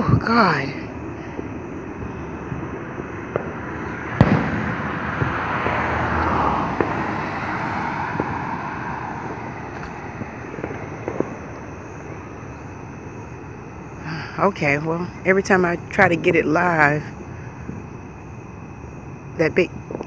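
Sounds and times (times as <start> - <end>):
firework bang: 1.0 - 12.8
small firework pops: 1.3 - 11.8.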